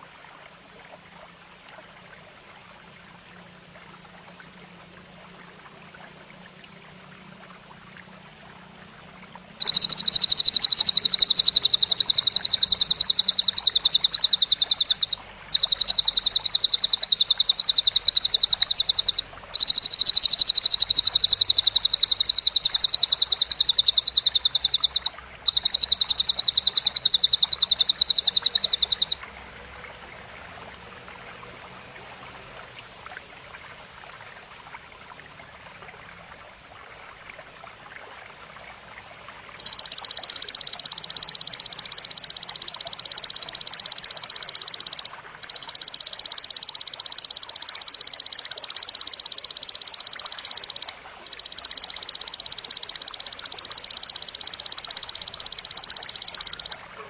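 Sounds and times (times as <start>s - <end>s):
grasshopper buzzing trills: 9.6s - 29.2s.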